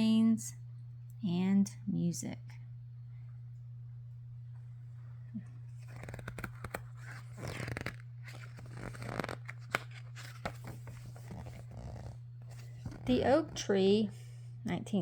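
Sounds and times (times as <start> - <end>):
steady low hum: 0.0 - 15.0
book pages rustling: 5.7 - 13.8.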